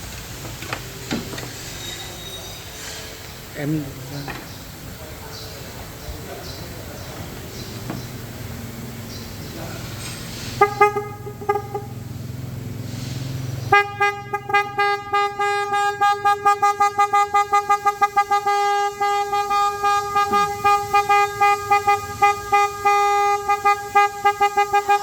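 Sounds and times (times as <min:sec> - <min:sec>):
car horn blasts: 0:10.5 - 0:12.2, 0:13.6 - 0:25.0.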